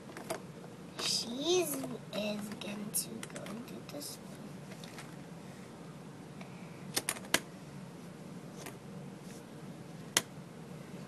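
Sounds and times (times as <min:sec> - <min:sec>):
low steady hum: 0:00.0 - 0:11.0
plastic toys clicking: 0:03.2 - 0:03.6.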